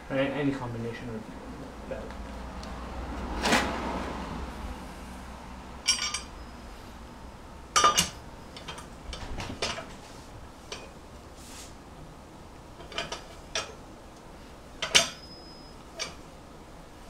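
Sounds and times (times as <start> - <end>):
metal lug nuts clinking: 5.8 - 6.6, 7.7 - 9.9, 10.6 - 11.0, 12.8 - 13.9, 14.7 - 16.3.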